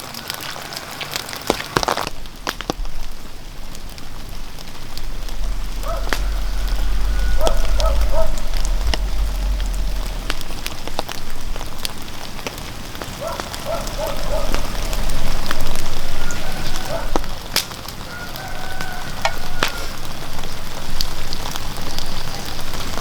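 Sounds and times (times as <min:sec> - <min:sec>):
fire crackling and popping: 0:00.0 - 0:23.0
low rumble: 0:02.0 - 0:17.5.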